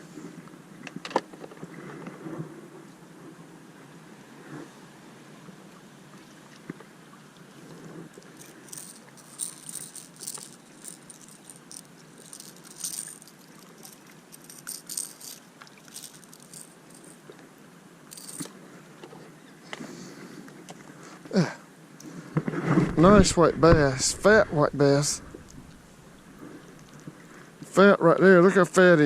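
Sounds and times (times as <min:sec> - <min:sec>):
fishing lure rattling and clicking: 0:08.2 - 0:17.2, 0:18.1 - 0:18.5.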